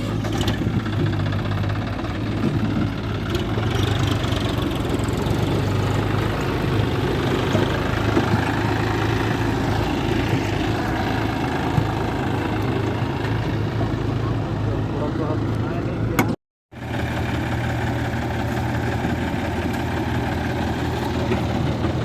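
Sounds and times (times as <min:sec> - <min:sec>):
diesel engine idling: 0:00.0 - 0:22.0.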